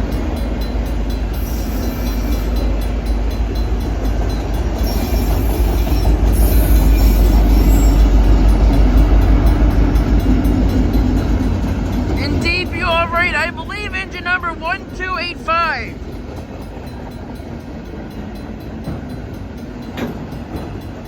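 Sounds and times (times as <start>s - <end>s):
freight train cars rolling: 0.0s - 21.0s.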